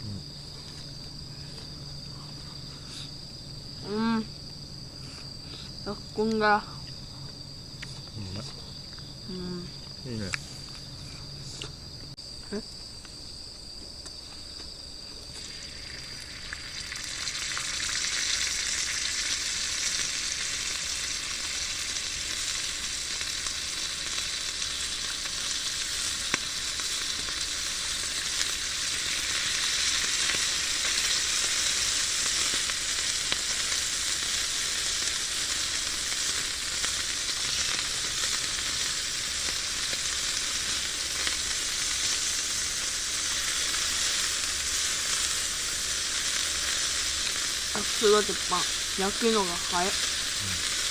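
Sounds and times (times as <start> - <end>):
food sizzling on griddle: 15.2 - 50.9.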